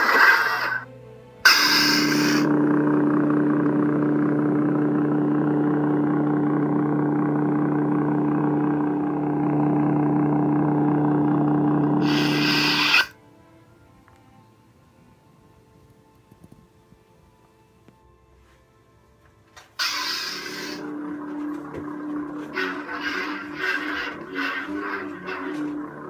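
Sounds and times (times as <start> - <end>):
lightsaber ignition: 0.0 - 0.8, 1.4 - 13.2, 19.8 - 26.0
lightsaber retraction: 0.0 - 0.8, 1.5 - 2.6, 12.0 - 13.1, 19.8 - 26.0
low electric hum: 0.0 - 26.0.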